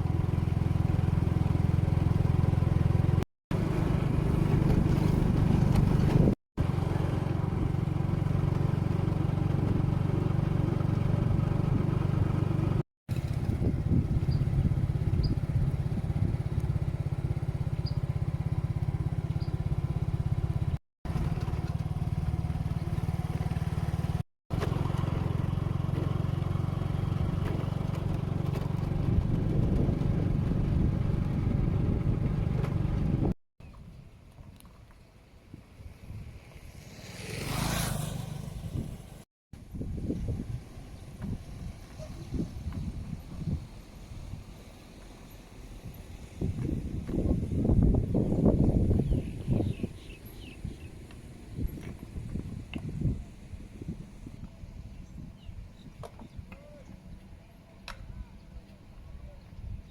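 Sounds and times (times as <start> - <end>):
construction machinery engines running: 0.0 - 33.3.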